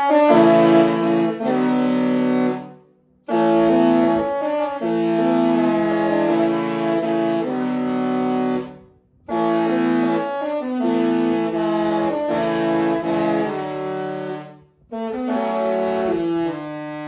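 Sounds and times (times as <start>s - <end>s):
ship's musical horn playing: 0.0s - 17.0s.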